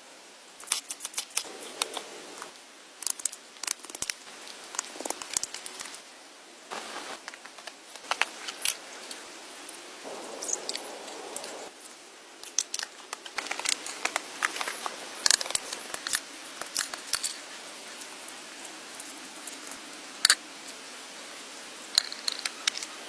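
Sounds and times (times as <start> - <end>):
sharp clicks and snaps: 0.6 - 6.0, 12.4 - 17.4, 20.2 - 20.4, 21.9 - 22.9
rustling: 0.6 - 23.0
scraping rustle: 6.7 - 12.0.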